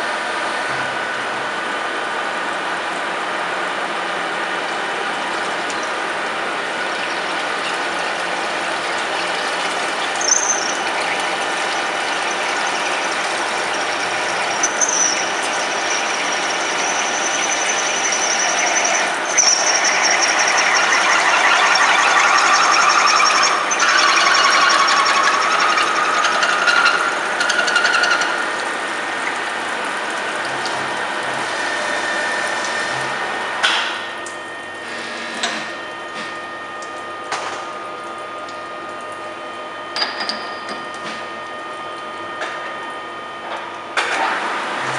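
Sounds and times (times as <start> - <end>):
milling machine running: 0.0 - 44.9
thin high squeal: 10.2 - 28.4.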